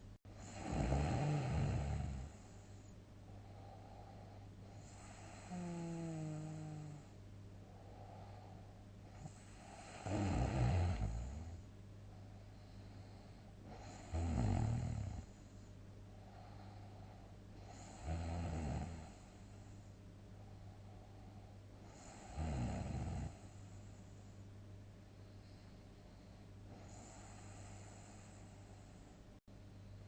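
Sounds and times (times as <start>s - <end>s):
steady low hum: 0.0s - 30.0s
person snoring loudly: 0.4s - 2.4s, 4.9s - 7.1s, 9.3s - 11.6s, 13.8s - 15.3s, 17.7s - 19.2s, 22.0s - 23.4s.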